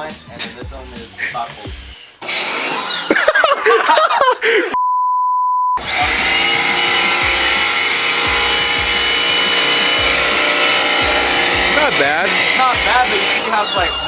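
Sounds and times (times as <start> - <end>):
pressure washer motor whine: 1.7 - 3.3, 5.8 - 14.0
censor beep: 4.8 - 5.8.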